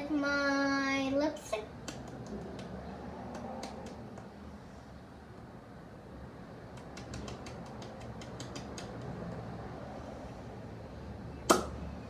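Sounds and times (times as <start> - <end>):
slime clicking by hand: 6.7 - 9.1.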